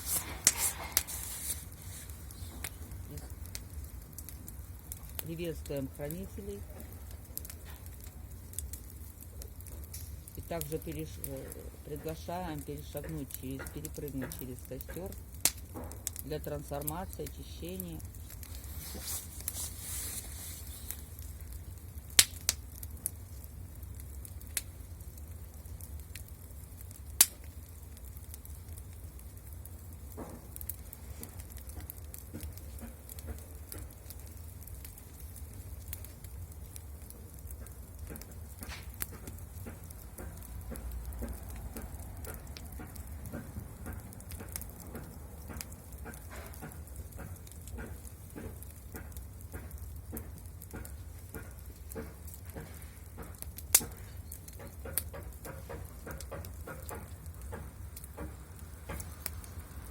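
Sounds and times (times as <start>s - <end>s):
bonfire crackling: 0.0s - 59.9s.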